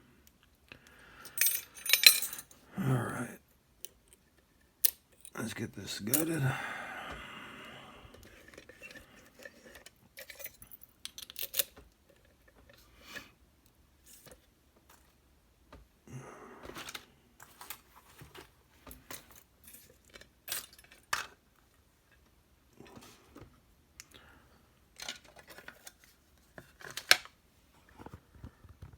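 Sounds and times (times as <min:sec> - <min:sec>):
small metal clicks and clinks: 0:01.3 - 0:02.5, 0:08.8 - 0:11.8.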